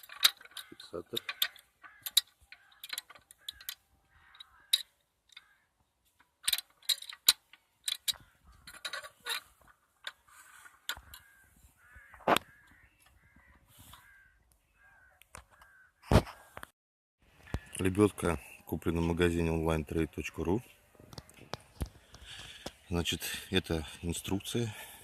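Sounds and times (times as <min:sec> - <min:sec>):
clicks and knocks of hand winch: 0:00.0 - 0:05.5, 0:06.2 - 0:11.3.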